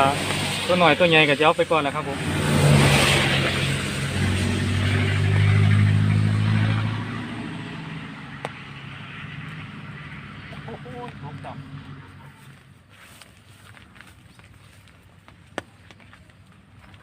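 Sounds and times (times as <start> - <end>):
engine passing by: 0.0 - 14.2.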